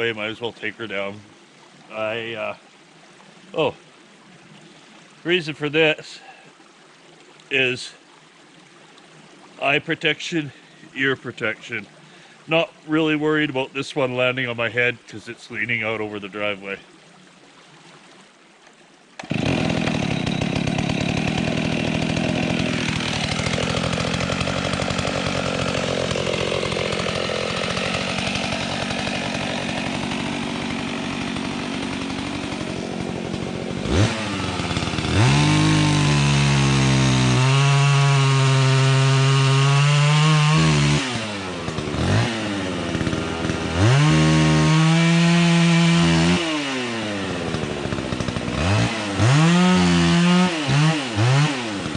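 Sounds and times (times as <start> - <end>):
chainsaw cutting into wood: 19.2 - 51.9.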